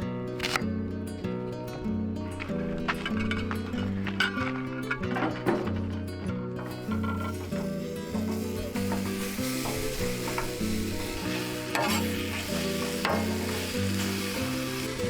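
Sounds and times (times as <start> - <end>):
food sizzling in a pan: 6.6 - 15.0.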